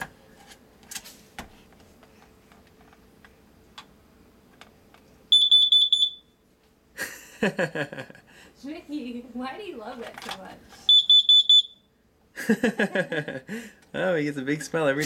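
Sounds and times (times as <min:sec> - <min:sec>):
detector alarm rapid beeps: 0:05.3 - 0:06.3, 0:10.9 - 0:11.9.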